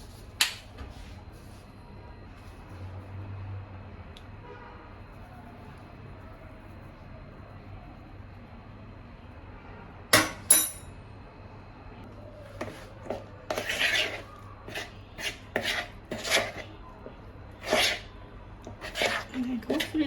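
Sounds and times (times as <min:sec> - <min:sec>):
kitchenware clinks: 0:10.2 - 0:10.9
spoon scraping a bowl: 0:12.5 - 0:20.0.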